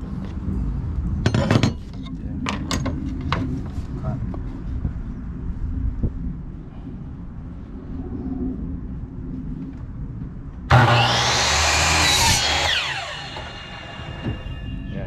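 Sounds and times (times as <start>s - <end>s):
power saw cutting wood: 10.7s - 15.0s
saw blade winding down: 10.7s - 15.0s.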